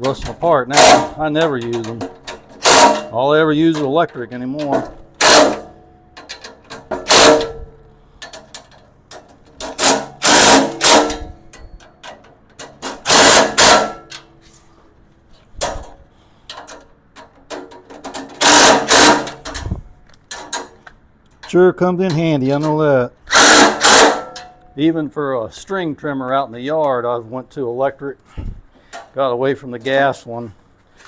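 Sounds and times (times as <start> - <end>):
small clicks and knocks: 8.2 - 9.9, 15.6 - 18.4.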